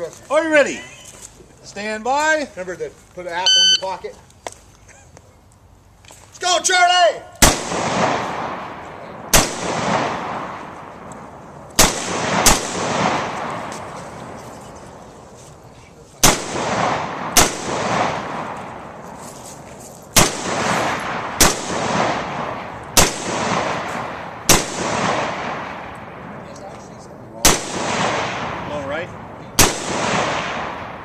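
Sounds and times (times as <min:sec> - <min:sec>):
rifle shots with echo: 0:07.4 - 0:14.4, 0:16.2 - 0:19.0, 0:20.1 - 0:26.6, 0:27.4 - 0:31.0.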